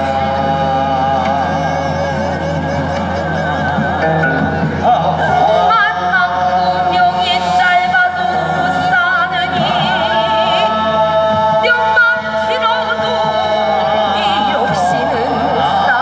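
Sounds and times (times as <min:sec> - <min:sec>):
low instrumental drone: 0:00.0 - 0:06.2
voices singing with vibrato: 0:00.0 - 0:16.0.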